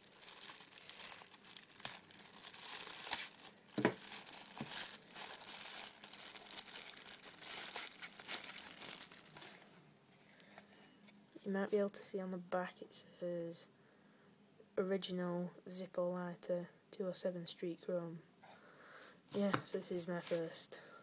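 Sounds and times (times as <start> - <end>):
plastic wrap snapping: 0.0 - 9.6
plastic wrap crinkling and tearing: 0.0 - 9.8.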